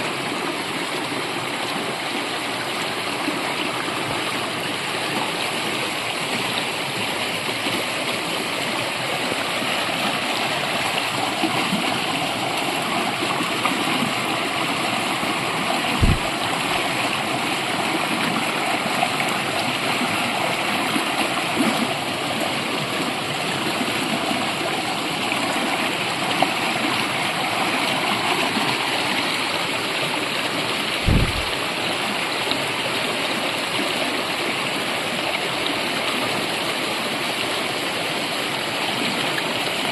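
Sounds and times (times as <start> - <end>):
brook water rushing: 0.0 - 39.9
brief low thumps: 16.0 - 16.3, 31.0 - 31.6.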